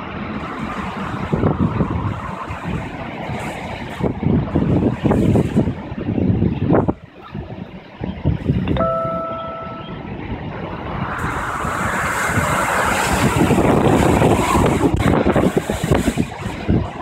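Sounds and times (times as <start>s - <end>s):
strong wind buffeting microphone: 0.0s - 17.0s
short steady tone: 8.7s - 10.3s.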